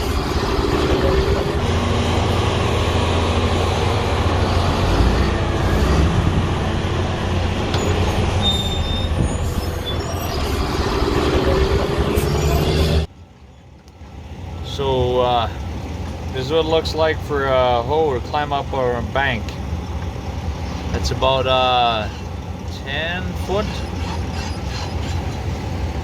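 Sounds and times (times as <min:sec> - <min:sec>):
diesel truck engine rumble: 0:00.0 - 0:26.0
faint squeaks and rattles: 0:07.8 - 0:14.8, 0:21.9 - 0:26.0.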